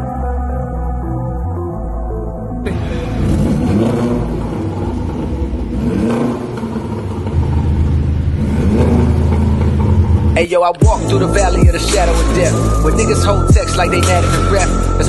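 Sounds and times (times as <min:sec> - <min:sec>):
car engine revving: 0:02.6 - 0:15.0.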